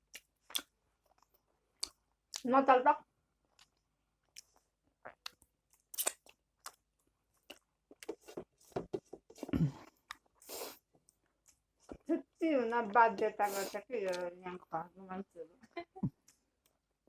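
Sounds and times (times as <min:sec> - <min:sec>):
chewing and crunching: 0:00.0 - 0:02.5, 0:03.6 - 0:08.3
wet mouth clicks: 0:00.1 - 0:02.4, 0:04.4 - 0:06.8, 0:13.4 - 0:14.2.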